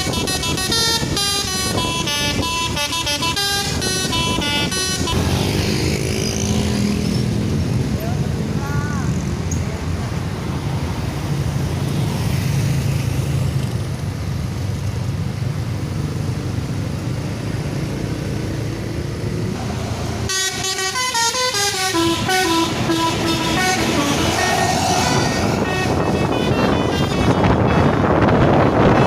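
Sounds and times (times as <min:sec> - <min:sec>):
multi-tone musical air horn: 0:00.0 - 0:05.6, 0:20.3 - 0:29.0
bus engine droning: 0:00.0 - 0:29.0.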